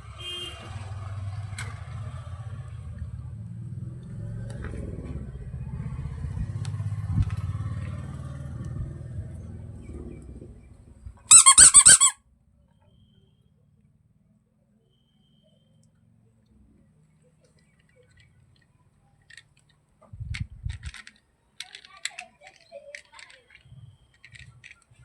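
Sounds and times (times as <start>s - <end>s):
high squeaky chirps: 11.3s - 12.2s
toy vehicle rattling rumble: 11.3s - 12.2s, 17.4s - 25.0s.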